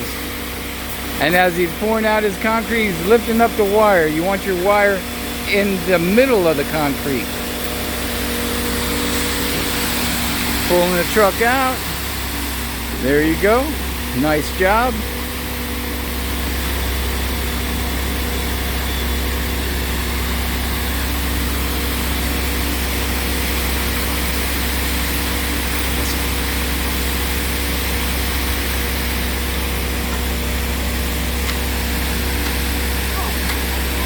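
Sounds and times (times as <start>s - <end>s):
diesel engine droning: 0.0s - 24.2s.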